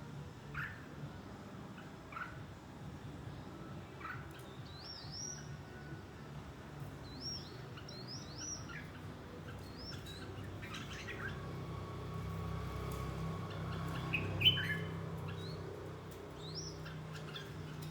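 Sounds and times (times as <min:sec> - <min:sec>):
bird chirping: 0:07.0 - 0:17.9.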